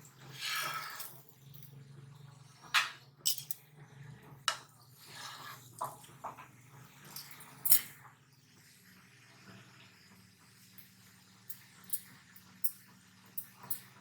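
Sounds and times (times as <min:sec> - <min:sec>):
kitchen utensils clicking and knocking: 0:02.7 - 0:03.7, 0:07.1 - 0:08.0, 0:11.5 - 0:14.0.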